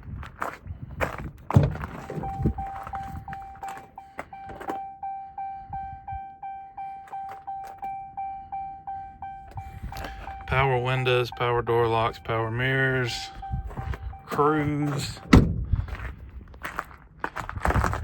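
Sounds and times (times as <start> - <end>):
truck door opening thunk: 1.5 - 4.8, 15.1 - 15.6
pulsing door warning chime: 2.0 - 15.3.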